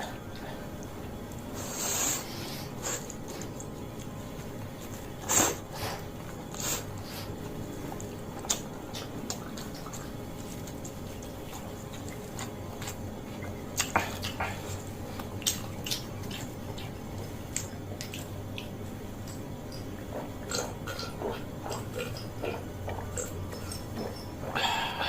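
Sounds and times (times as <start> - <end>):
low steady hum: 0.0 - 25.0
wet chewing: 0.2 - 25.0
lip smacks and mouth clicks: 6.2 - 21.1.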